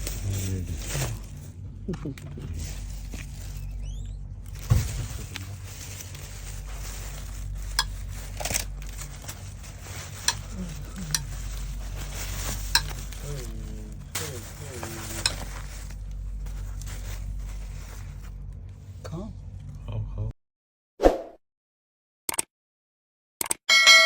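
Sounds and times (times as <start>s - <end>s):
spoon striking a pan: 23.7s - 24.0s.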